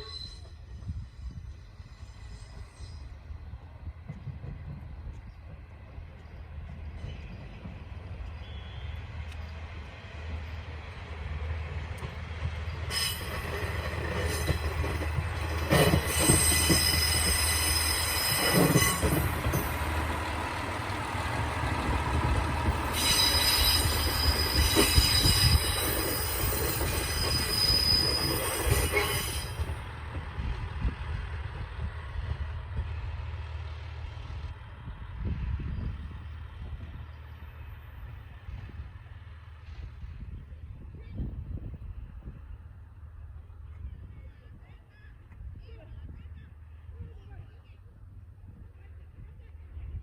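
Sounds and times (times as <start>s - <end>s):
train wheels squealing: 0.0s - 9.6s, 12.6s - 20.0s, 21.7s - 29.8s
diesel railcar engine humming: 0.0s - 50.0s.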